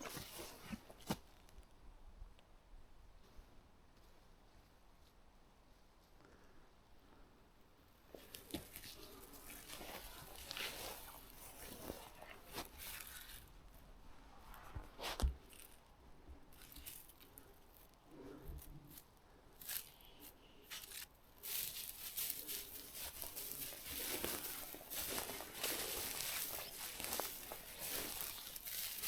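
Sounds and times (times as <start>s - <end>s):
crunching and rustling: 0.0s - 1.6s, 8.1s - 29.0s.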